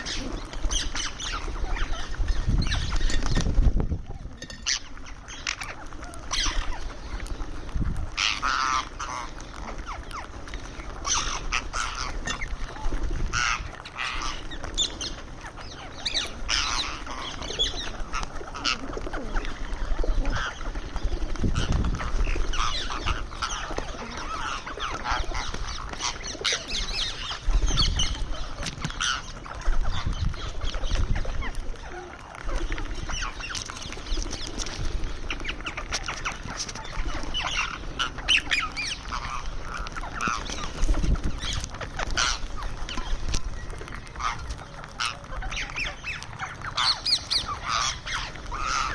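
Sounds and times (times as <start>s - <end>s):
parrot squawking and chirping: 0.0s - 3.4s, 4.4s - 7.2s, 35.4s - 43.2s, 44.1s - 48.9s.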